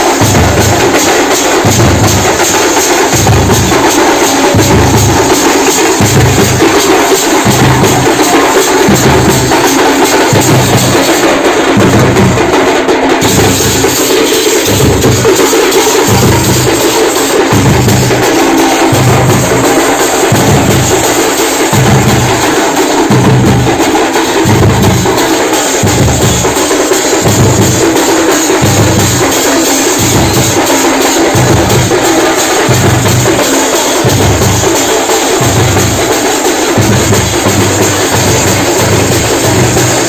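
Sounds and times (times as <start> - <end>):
drums pounding deep thuds: 0.0 - 29.4.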